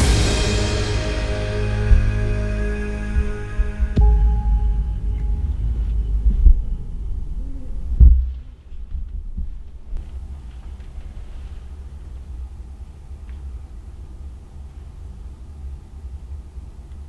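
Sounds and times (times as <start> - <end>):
low steady rumble: 0.0 - 8.9.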